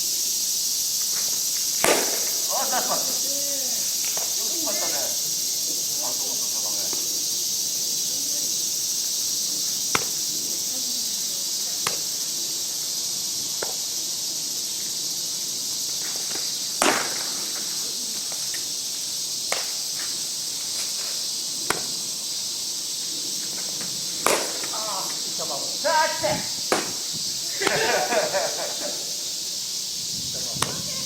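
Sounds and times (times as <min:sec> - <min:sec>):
high-pitched insect chorus: 0:00.0 - 0:31.0
bat cracking softball: 0:01.1 - 0:02.9, 0:04.1 - 0:04.9, 0:09.8 - 0:10.2, 0:11.8 - 0:12.1, 0:13.6 - 0:13.8, 0:16.0 - 0:18.7, 0:19.5 - 0:20.1, 0:21.7 - 0:22.0, 0:23.8 - 0:24.9, 0:26.7 - 0:28.0, 0:30.6 - 0:30.9.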